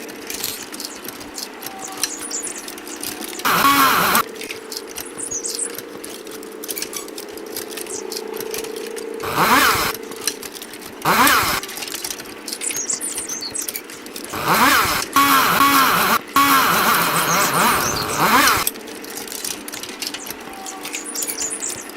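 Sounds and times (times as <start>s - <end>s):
chainsaw running and revving: 3.4s - 4.2s, 9.2s - 10.0s, 11.0s - 11.7s, 14.3s - 18.7s.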